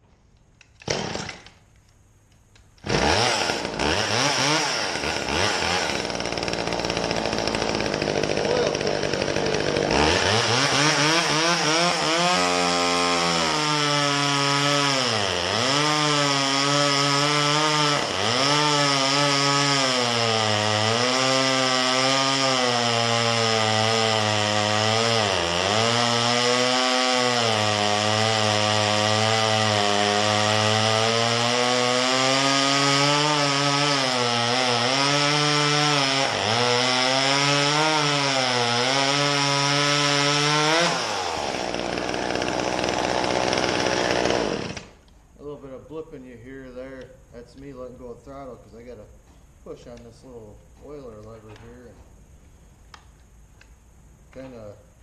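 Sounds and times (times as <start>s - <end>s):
chainsaw cutting log: 0.7s - 1.7s, 2.6s - 45.1s.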